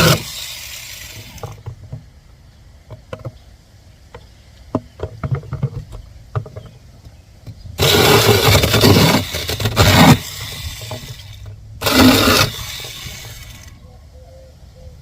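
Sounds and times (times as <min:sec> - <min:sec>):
cordless chainsaw running: 0:00.0 - 0:01.6, 0:07.8 - 0:13.8.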